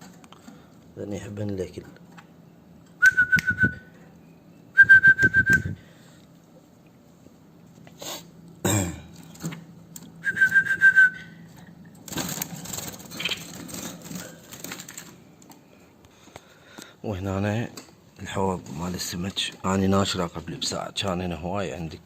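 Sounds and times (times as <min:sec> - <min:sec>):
young birds chirping: 0:13.1 - 0:13.6.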